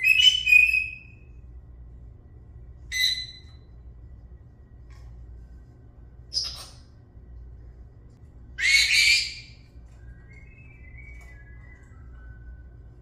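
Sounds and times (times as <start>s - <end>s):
parrot whistled calls: 0.0s - 1.2s, 2.9s - 3.6s, 6.3s - 6.9s, 8.6s - 12.6s.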